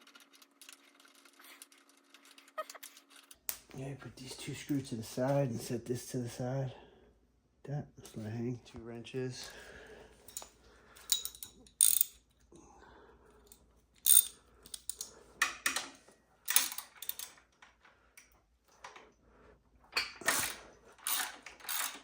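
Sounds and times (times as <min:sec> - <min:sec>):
ratchet wrench clicking: 0:10.3 - 0:12.2, 0:13.5 - 0:15.1, 0:20.3 - 0:22.0.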